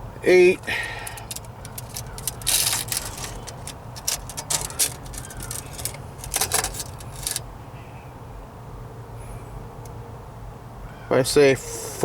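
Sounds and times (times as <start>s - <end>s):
tape measure clicking and rattling: 1.0s - 7.4s.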